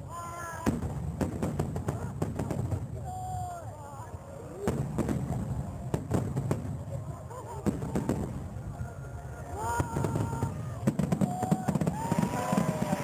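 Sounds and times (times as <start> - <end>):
fireworks bangs: 0.6 - 3.1, 4.6 - 8.6, 9.6 - 13.0
spectators exclaiming: 7.2 - 13.0.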